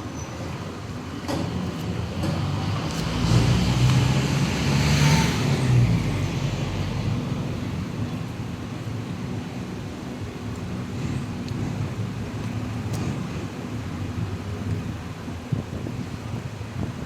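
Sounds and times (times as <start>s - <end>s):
vehicle passing: 2.4s - 7.8s.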